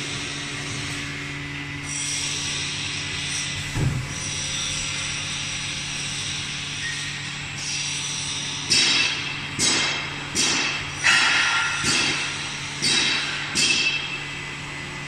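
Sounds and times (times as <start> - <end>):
glass cutting machine humming: 0.0 - 9.5.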